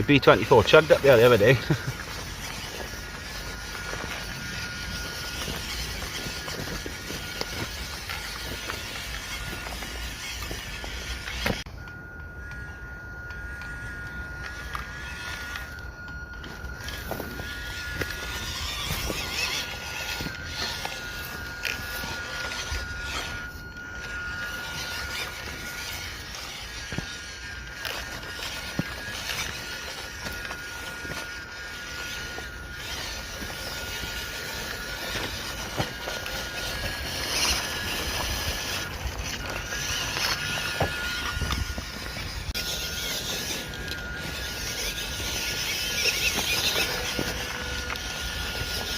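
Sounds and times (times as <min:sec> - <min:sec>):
small electric motor whining: 0:00.0 - 0:48.9
tyres crunching on stones: 0:00.0 - 0:48.9.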